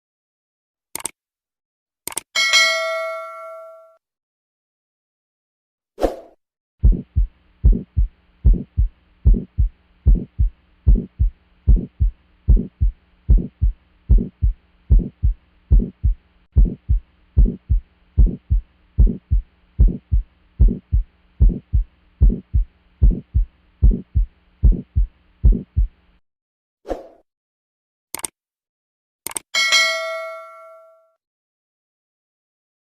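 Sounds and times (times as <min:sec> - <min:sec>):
click: 0:00.9 - 0:01.2, 0:02.0 - 0:02.3, 0:28.1 - 0:28.4, 0:29.2 - 0:29.5
faint hiss of heart murmur: 0:06.8 - 0:26.0
heartbeat thumping: 0:06.8 - 0:26.0
steady low hum: 0:06.8 - 0:26.2.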